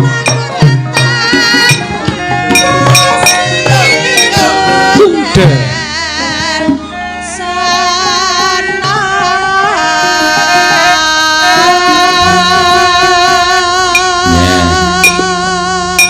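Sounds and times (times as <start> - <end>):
ringing metallophone tones: 0.0 - 5.8, 13.9 - 15.4
drum strokes: 0.0 - 6.9, 13.9 - 15.5
person singing: 0.0 - 16.0.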